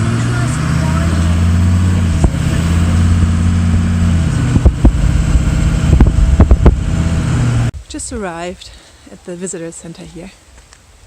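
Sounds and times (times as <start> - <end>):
vehicle engine and road noise: 0.0 - 7.8
sharp knocks and thumps: 4.5 - 5.1, 5.8 - 6.9.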